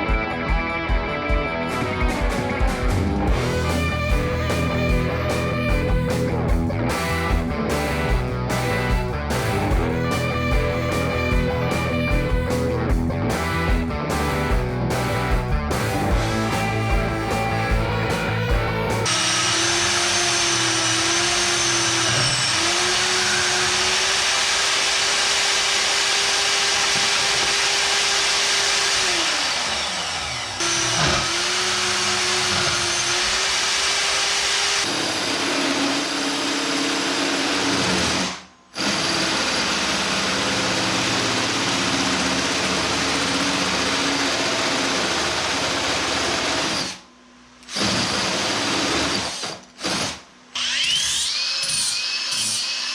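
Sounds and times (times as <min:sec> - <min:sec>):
power tool motor whining: 0:03.3 - 0:12.9, 0:16.2 - 0:47.0, 0:47.6 - 0:52.9.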